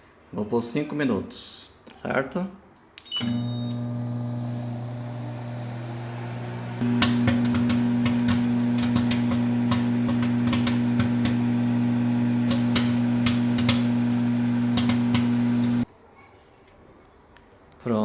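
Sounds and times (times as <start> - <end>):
microwave oven humming: 3.2 - 15.9
popcorn popping: 6.8 - 15.8.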